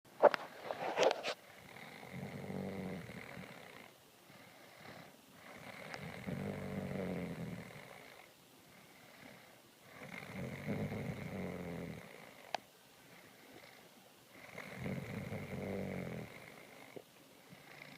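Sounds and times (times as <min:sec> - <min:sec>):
quiet breathing: 0:00.3 - 0:17.9
person snoring: 0:01.6 - 0:08.3, 0:09.0 - 0:12.5, 0:14.4 - 0:17.0, 0:17.6 - 0:17.9.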